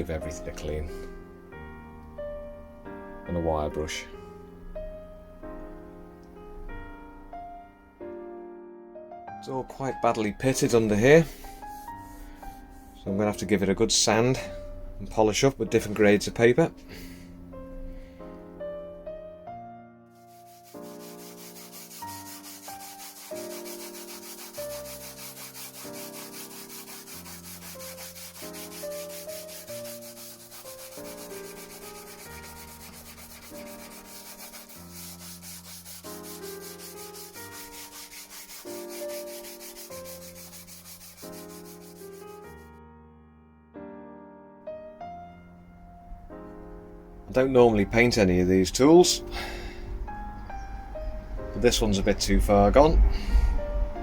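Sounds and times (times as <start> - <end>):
gentle piano music: 0.0 - 54.0
sandpaper rasping on metal: 10.5 - 13.0, 20.2 - 42.7.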